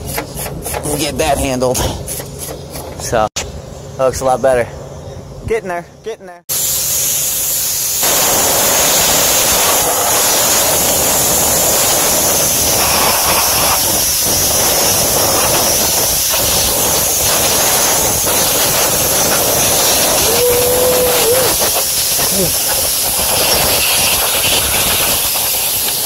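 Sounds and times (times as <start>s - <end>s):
gas blasting from hose nozzle: 6.5s - 26.0s.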